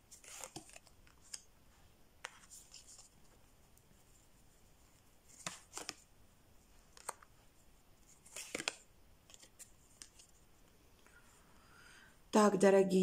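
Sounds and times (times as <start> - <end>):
cards swishing on a table: 0.1 - 1.5, 5.2 - 6.0, 8.1 - 10.3.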